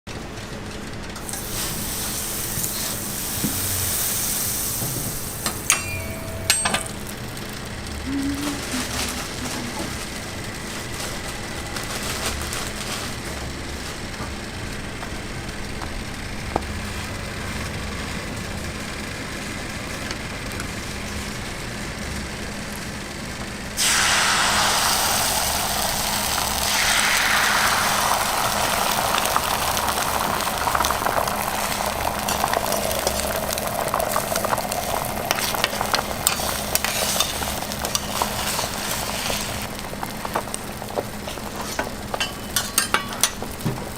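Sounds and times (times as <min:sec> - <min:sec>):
low background hum: 0:00.1 - 0:43.9
food sizzling on a griddle: 0:01.2 - 0:06.4, 0:23.8 - 0:43.9.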